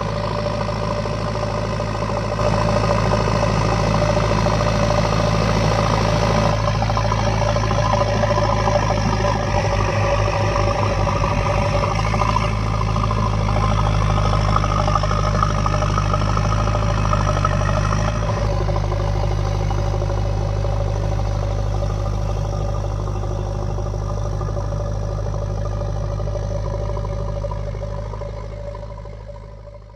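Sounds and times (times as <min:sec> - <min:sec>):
diesel engine droning: 0:00.0 - 0:29.9.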